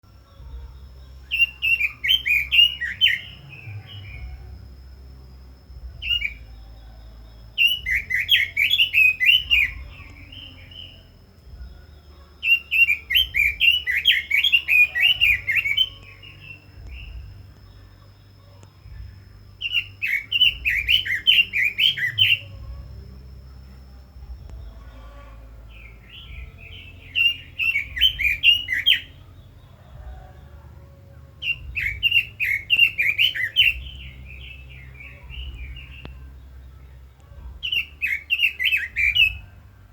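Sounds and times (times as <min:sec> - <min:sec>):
faint steady high tone: 0:00.0 - 0:39.9
bird warbling: 0:12.0 - 0:17.3.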